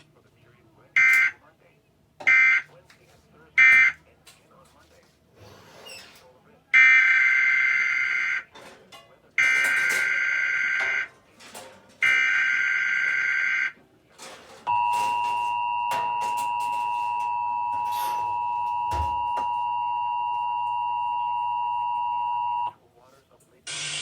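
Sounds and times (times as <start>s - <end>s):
two-tone alert signal: 14.7s - 22.7s.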